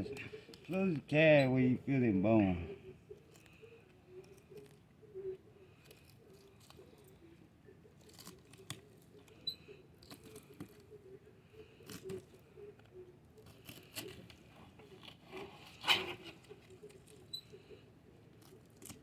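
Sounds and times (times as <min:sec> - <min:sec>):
knife scraping and tearing fish: 0:05.8 - 0:07.1, 0:07.9 - 0:10.9, 0:11.7 - 0:17.6, 0:18.2 - 0:19.0.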